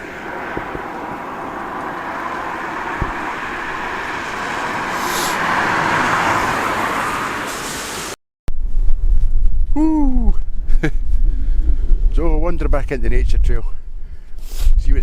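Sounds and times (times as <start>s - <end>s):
car driving past: 0.0s - 8.2s.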